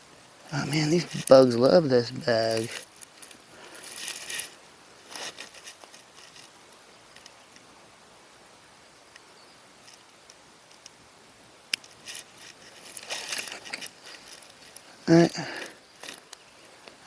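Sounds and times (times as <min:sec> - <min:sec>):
faint hiss: 0:00.0 - 0:17.0
fishing gear rustling and clicking: 0:00.5 - 0:07.7, 0:09.8 - 0:11.0, 0:11.7 - 0:17.0.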